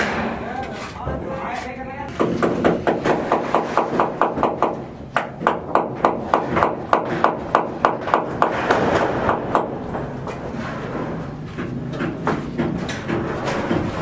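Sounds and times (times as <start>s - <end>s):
hammer striking rapidly: 2.2s - 10.2s.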